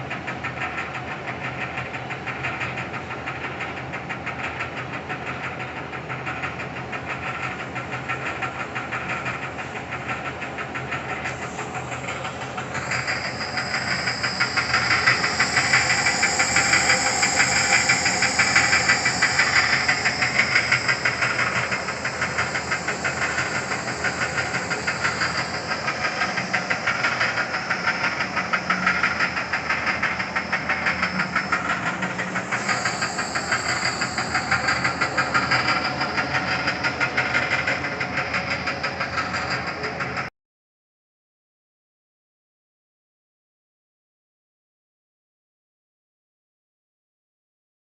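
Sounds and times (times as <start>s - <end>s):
grinder motor running: 12.7s - 39.4s.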